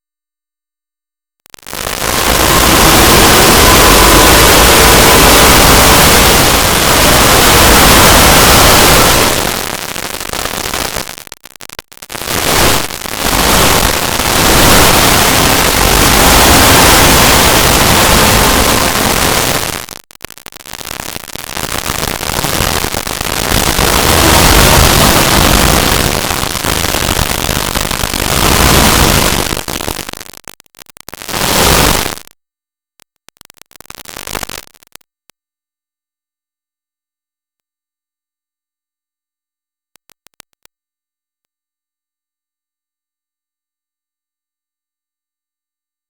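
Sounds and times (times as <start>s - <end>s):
loud harsh static noise: 1.5s - 32.3s, 33.8s - 34.8s.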